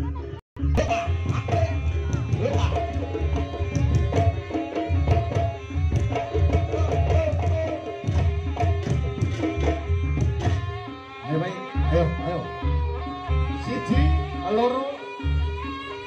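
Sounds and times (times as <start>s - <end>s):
heavy low beats: 0.0s - 11.0s
hand drums beating: 0.1s - 11.1s.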